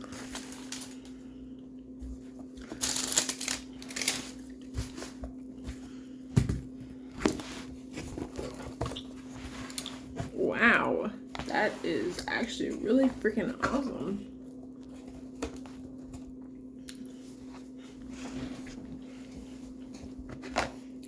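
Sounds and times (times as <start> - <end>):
steady low hum: 0.0 - 21.0
plastic packaging crinkling: 2.4 - 5.2.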